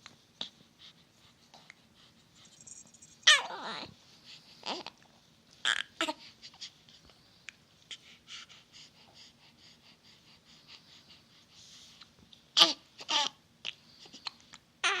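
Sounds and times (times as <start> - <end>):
breathy sniffs and breaths: 7.9 - 12.1.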